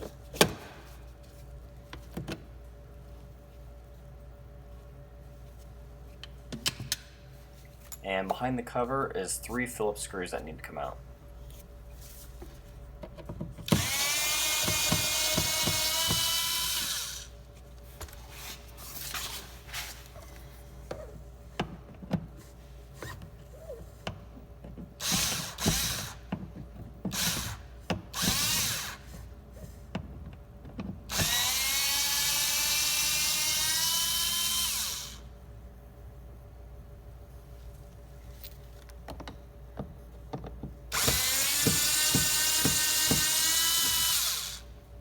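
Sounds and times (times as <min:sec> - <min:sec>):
power screwdriver motor whine: 0:31.1 - 0:35.2, 0:41.0 - 0:44.6.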